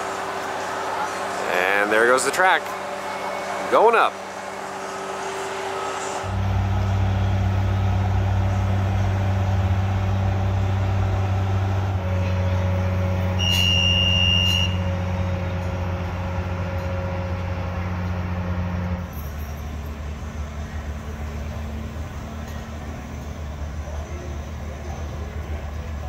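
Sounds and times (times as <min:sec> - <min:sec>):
crane engine running: 0:00.0 - 0:26.0
high beep: 0:13.4 - 0:14.8.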